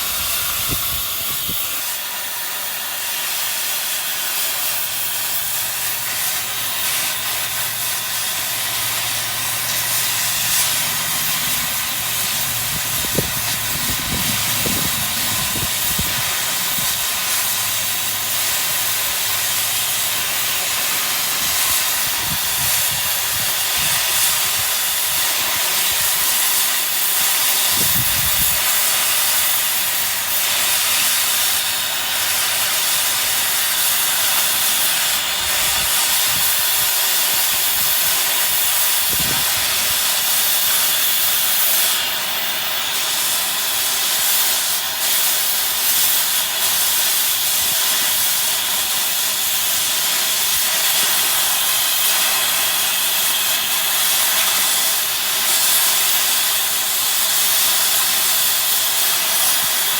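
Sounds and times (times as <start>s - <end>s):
gas torch flame hissing: 0.0s - 59.9s.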